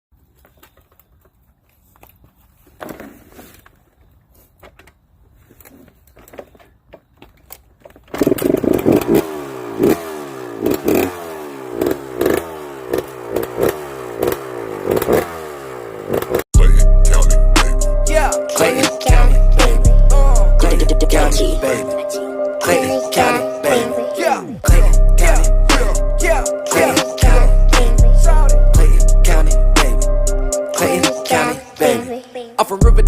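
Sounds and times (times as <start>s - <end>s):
two-stroke engine revving: 8.1s - 16.8s, 24.7s - 31.0s.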